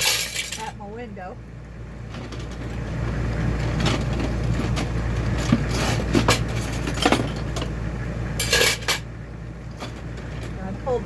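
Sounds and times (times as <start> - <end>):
silverware clinking in a sink: 0.0 - 0.8, 8.4 - 9.0
steady low hum: 0.0 - 11.0.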